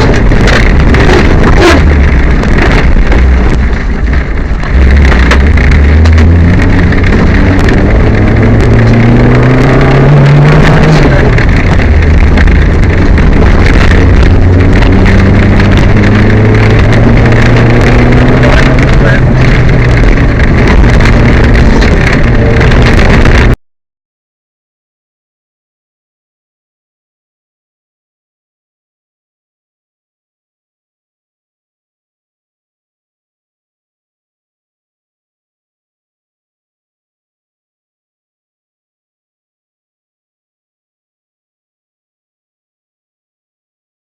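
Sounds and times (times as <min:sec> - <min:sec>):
rally car engine under load: 0:00.0 - 0:23.6
sharp clicks and rattles: 0:00.0 - 0:23.6.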